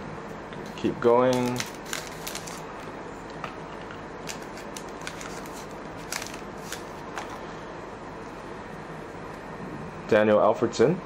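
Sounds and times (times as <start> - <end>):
trading cards sliding and clicking: 4.3 - 7.4.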